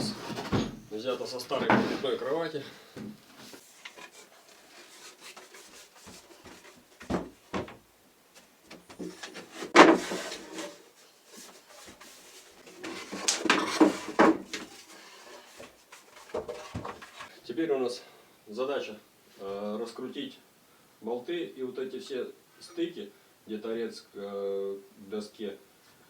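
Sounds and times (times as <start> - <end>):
wooden bed parts knocking: 0.0 - 2.1, 5.4 - 7.9, 8.6 - 10.7, 11.8 - 14.9, 15.6 - 17.3
wood scraping: 0.0 - 2.4, 3.0 - 7.8, 8.4 - 17.3.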